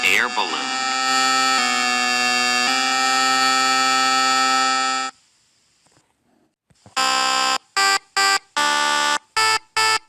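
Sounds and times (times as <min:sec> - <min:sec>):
buzzy horn-like tone: 0:00.0 - 0:05.1.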